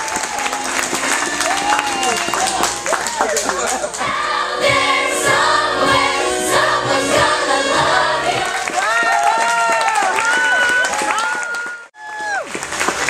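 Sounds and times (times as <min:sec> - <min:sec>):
backing music: 0:00.0 - 0:08.9
children's chorus singing: 0:04.0 - 0:09.2.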